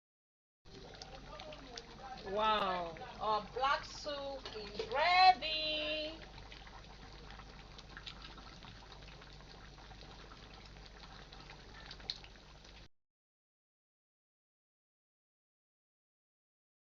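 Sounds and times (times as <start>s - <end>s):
soup bubbling with small pops: 0.7s - 12.9s.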